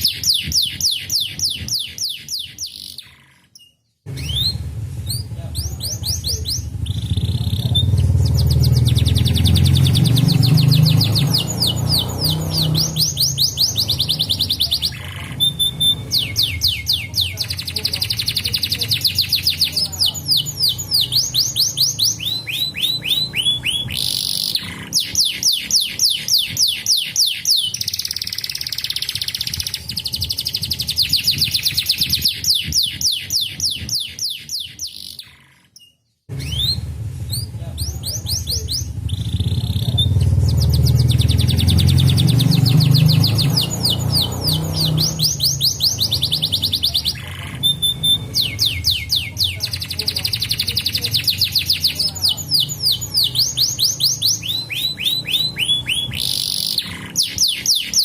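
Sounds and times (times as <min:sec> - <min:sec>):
canaries singing trills: 0:00.0 - 0:58.0.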